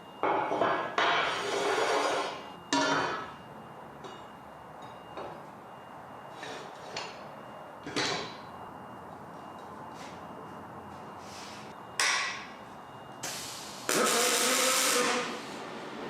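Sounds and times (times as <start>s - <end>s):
faint steady high tone: 0.0s - 1.0s, 2.3s - 13.9s.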